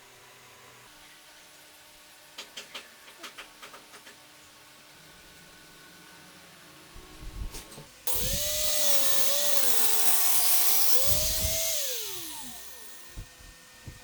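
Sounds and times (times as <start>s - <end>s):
angle grinder on wood: 8.1s - 13.3s.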